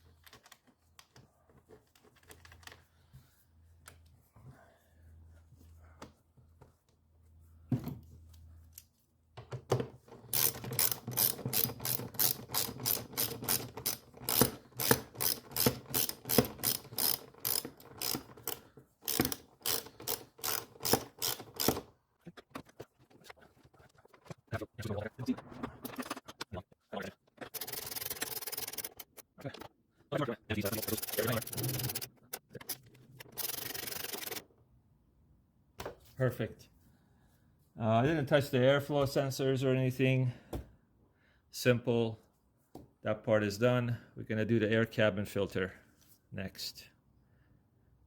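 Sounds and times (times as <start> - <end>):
hand ratchet clicking: 10.2 - 21.9, 27.5 - 29.2, 30.6 - 34.4.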